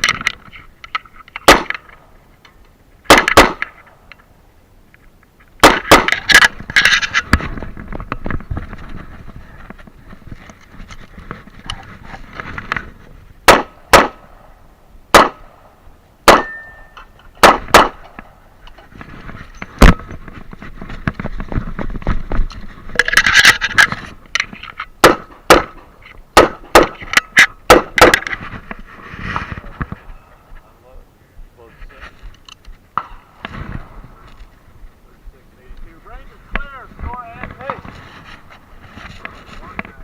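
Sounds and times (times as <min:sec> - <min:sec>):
gun handling clatter: 0:00.0 - 0:04.3, 0:05.7 - 0:13.0, 0:18.0 - 0:26.2, 0:26.9 - 0:30.0
revolver gunshots: 0:01.4 - 0:01.8, 0:03.1 - 0:03.8, 0:05.6 - 0:06.6, 0:13.4 - 0:14.5, 0:15.1 - 0:15.6, 0:16.2 - 0:16.8, 0:17.4 - 0:18.3, 0:25.0 - 0:27.1, 0:27.7 - 0:28.3.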